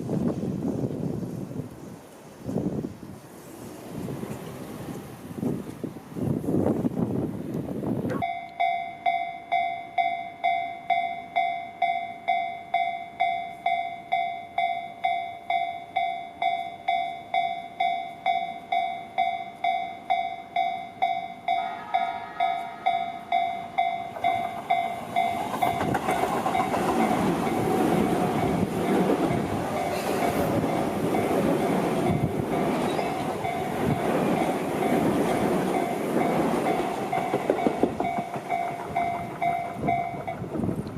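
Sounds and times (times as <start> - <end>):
train wheels on tracks: 0.0 - 8.0, 8.6 - 40.9
level crossing warning bell: 8.2 - 40.5.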